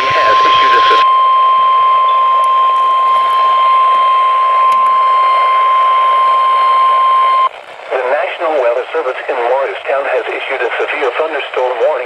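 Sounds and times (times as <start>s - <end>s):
steady loud alert tone: 0.0s - 7.5s.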